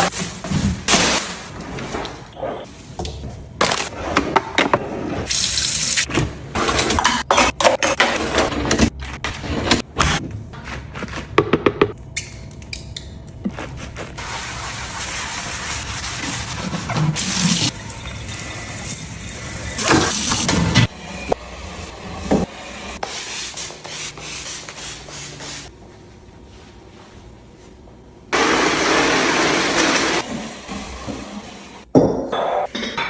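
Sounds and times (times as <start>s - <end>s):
vacuum cleaner running: 28.3s - 31.8s.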